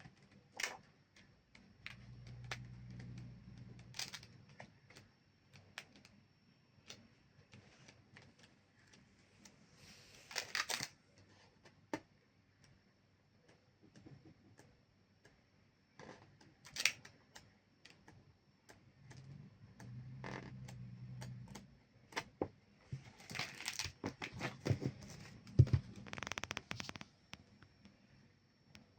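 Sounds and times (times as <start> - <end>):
soft low hum: 0.0 - 10.3, 17.2 - 23.3.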